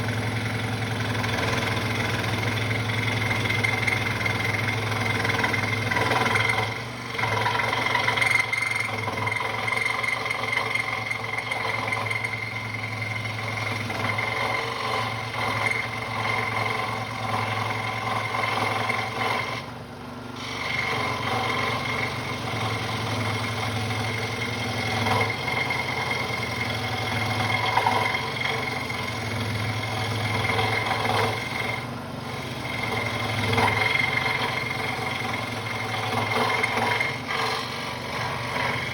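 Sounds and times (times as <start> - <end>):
scroll saw cutting wood: 0.0 - 38.9.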